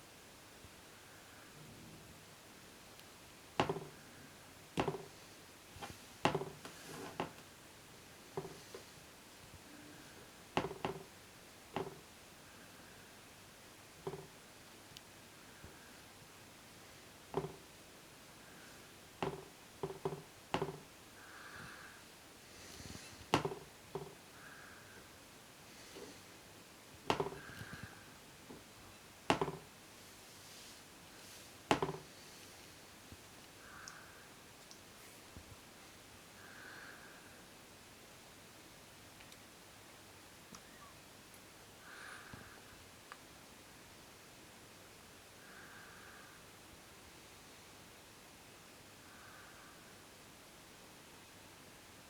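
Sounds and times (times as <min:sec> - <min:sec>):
sharp knocks and clicks: 0:03.6 - 0:04.0, 0:04.8 - 0:05.1, 0:05.8 - 0:07.4, 0:10.6 - 0:11.1, 0:11.8 - 0:12.0, 0:14.0 - 0:14.3, 0:17.4 - 0:17.6, 0:19.2 - 0:20.9, 0:23.4 - 0:24.2, 0:27.1 - 0:27.8, 0:29.3 - 0:29.7.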